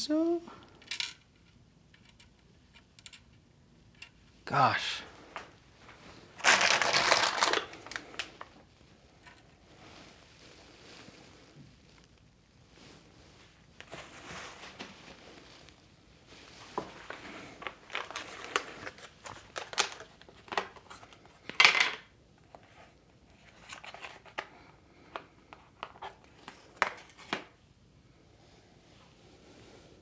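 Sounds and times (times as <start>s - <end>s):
plastic packaging crackle: 6.0s - 8.6s, 17.0s - 21.5s.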